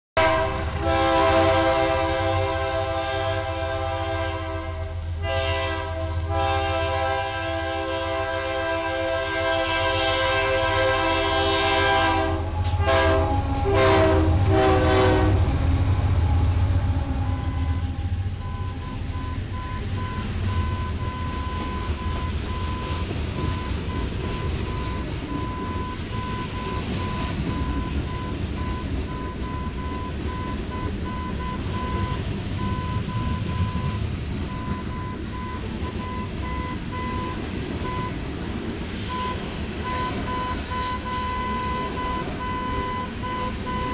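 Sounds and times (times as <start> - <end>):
locomotive air horn: 0.2 - 15.7, 16.5 - 23.7
train rumbling past: 0.2 - 43.9.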